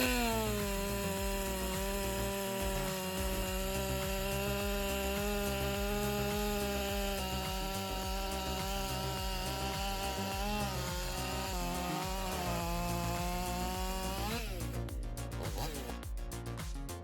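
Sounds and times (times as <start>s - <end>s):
powered saw cutting wood: 0.0s - 16.0s.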